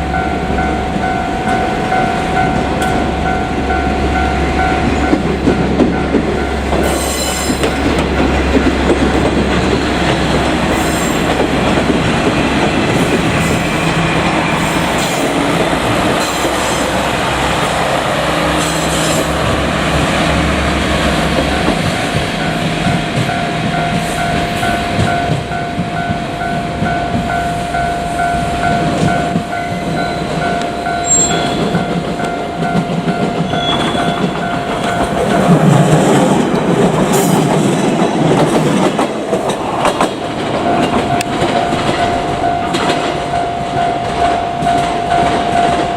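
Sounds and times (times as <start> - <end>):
train wheels clattering on rails: 0.0 - 45.9
level crossing alarm ringing: 21.0 - 36.0, 40.6 - 45.9.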